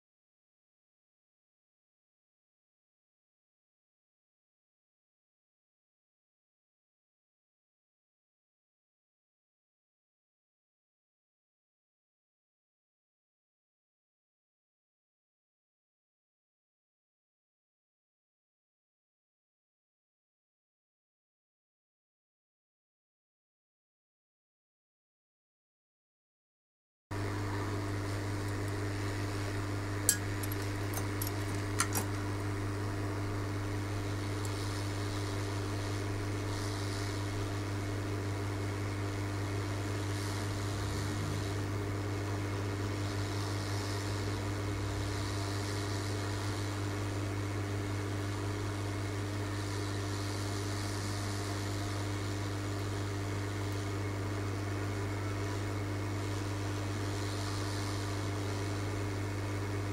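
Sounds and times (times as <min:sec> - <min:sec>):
electrical hum: 0:27.1 - 0:59.9
fan noise: 0:27.1 - 0:59.9.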